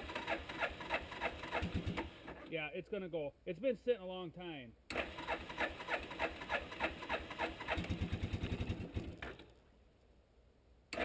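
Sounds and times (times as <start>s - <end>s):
engine cranking with electric starter: 0.0s - 2.5s, 4.9s - 9.5s.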